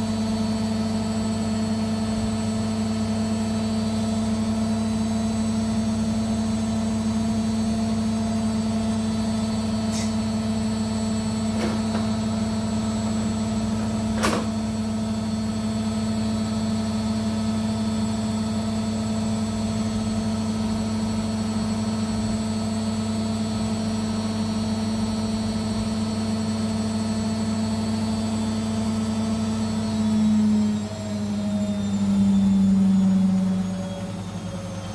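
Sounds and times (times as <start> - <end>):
washing machine motor hum: 0.0 - 26.8.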